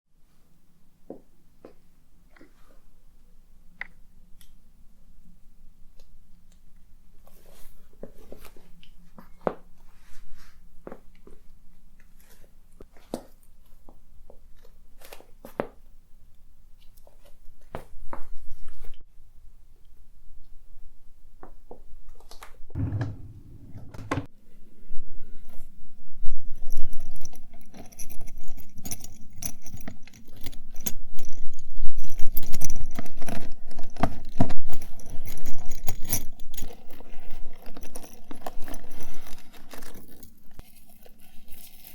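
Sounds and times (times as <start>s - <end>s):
clattering: 22.8s - 24.3s
low thump: 22.8s - 24.3s
rummaging through small objects: 26.5s - 41.9s
crinkling: 26.6s - 41.9s.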